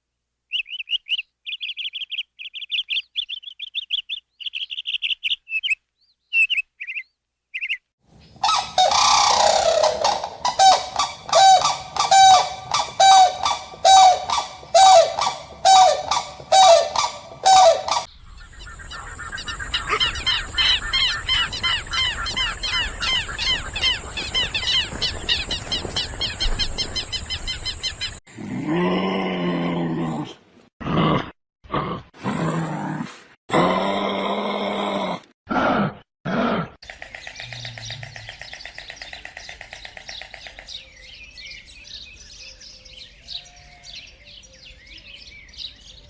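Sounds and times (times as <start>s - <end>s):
many birds chirping rapidly: 7.6s - 28.2s, 36.9s - 46.0s
loud honking bird calls: 8.4s - 18.1s
low drawn-out animal call: 8.4s - 18.1s.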